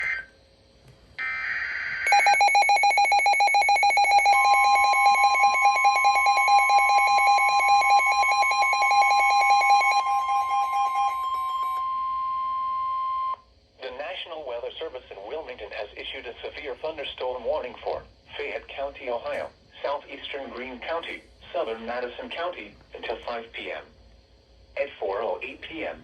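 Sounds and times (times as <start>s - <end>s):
steady warning alarm tone: 1.2s - 13.4s
rapid high-pitched beeping alarm: 2.0s - 12.6s.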